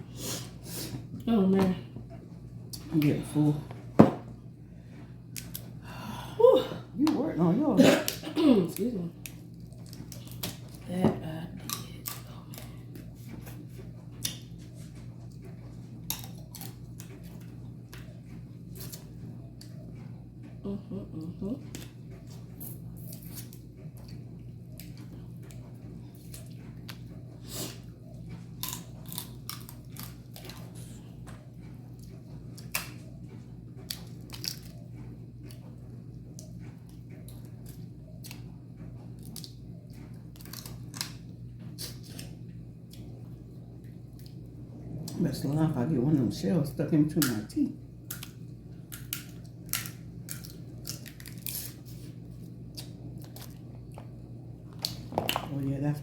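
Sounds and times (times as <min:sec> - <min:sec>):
steady low hum: 0:00.0 - 0:56.0
wet chewing: 0:21.6 - 0:33.1, 0:39.1 - 0:43.2, 0:48.0 - 0:55.4
crab shells cracking: 0:48.1 - 0:51.8.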